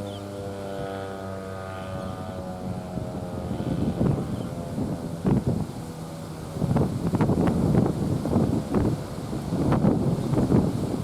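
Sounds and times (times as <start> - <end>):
wind buffeting microphone: 1.8 - 11.0.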